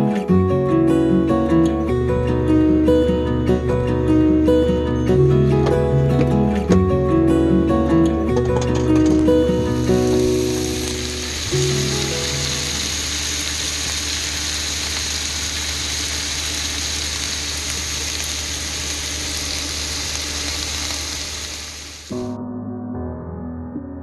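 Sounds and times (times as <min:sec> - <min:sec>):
rain hissing: 0:09.5 - 0:22.2.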